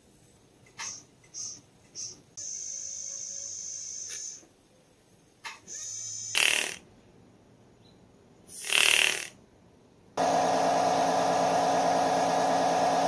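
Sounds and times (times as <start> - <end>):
short hissing burst: 6.3 - 6.8, 8.5 - 9.4
machine hum with whine: 10.2 - 13.0.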